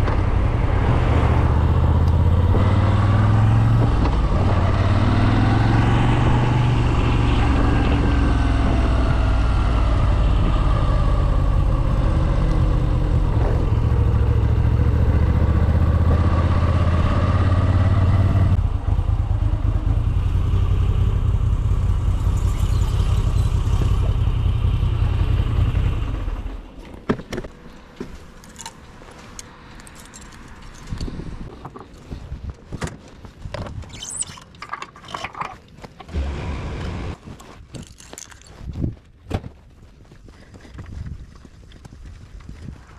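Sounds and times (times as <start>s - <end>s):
motorcycle engine riding: 0.0s - 29.4s.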